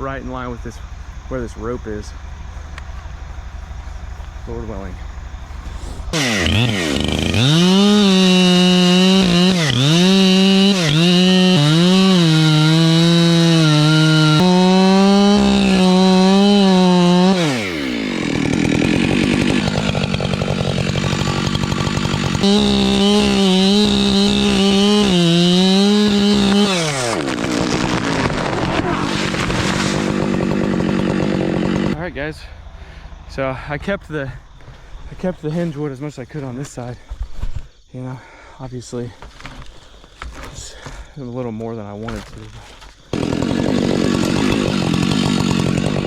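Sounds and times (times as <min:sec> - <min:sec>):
chainsaw cutting wood: 0:05.7 - 0:32.0, 0:42.8 - 0:46.0.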